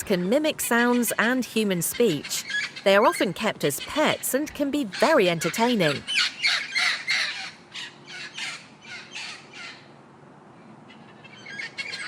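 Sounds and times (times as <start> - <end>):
parrot squawking: 2.0 - 9.8.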